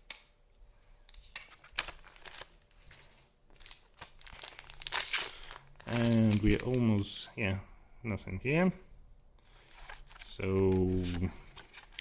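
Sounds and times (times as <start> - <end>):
foil wrappers crinkling: 1.3 - 7.1, 9.5 - 12.0.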